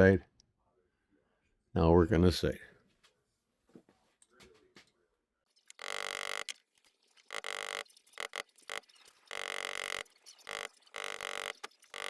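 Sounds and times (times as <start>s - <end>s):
small power tool whining: 5.6s - 12.0s.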